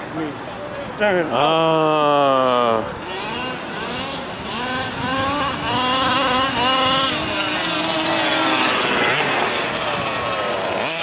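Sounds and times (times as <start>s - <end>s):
small two-stroke engine revving: 2.4s - 11.0s.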